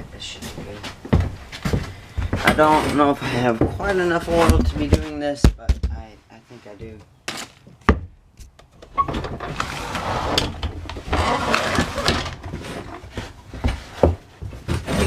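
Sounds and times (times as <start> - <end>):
rustling: 6.2 - 15.0.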